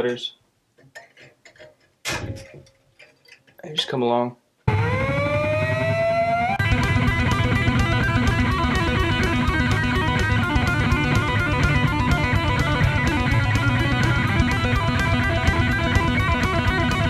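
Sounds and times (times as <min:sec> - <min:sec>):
electric guitar bending and running: 0:04.7 - 0:17.0
steady drum beat: 0:06.6 - 0:17.0.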